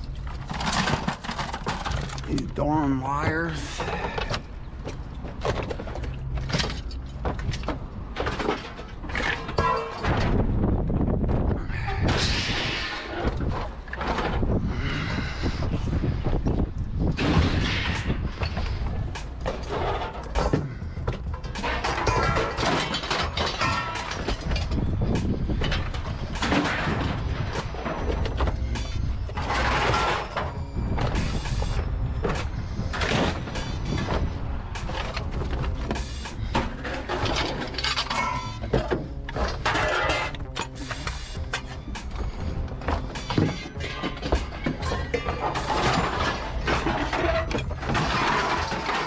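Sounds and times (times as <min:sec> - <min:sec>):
scrap metal clanking and rattling: 0:00.0 - 0:10.6, 0:11.4 - 0:15.2, 0:16.1 - 0:49.0
low machinery rumble: 0:13.3 - 0:49.0.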